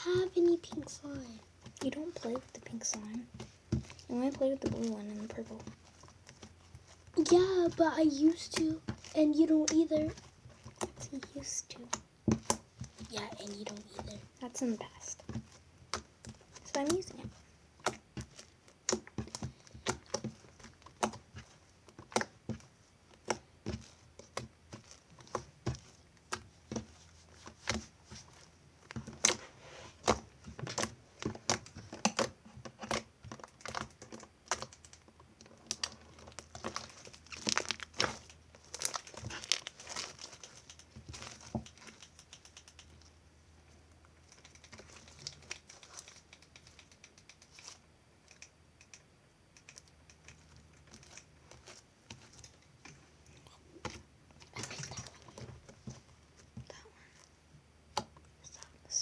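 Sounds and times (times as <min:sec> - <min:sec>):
slime clicking and popping: 0:30.0 - 0:35.0.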